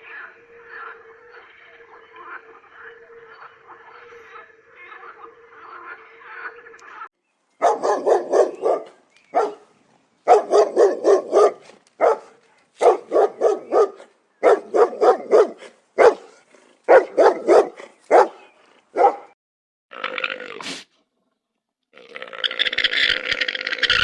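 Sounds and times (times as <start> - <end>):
dog barking: 7.6 - 19.4.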